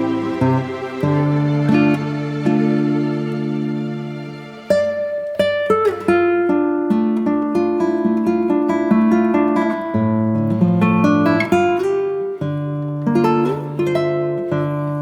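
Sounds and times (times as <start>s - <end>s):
acoustic guitar music: 0.0s - 15.0s.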